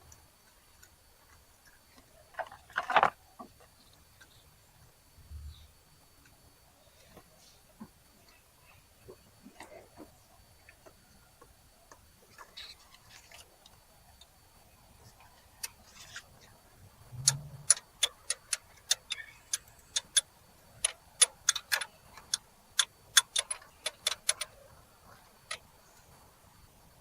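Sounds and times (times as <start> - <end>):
ratchet wrench clicking: 17.2 - 24.6.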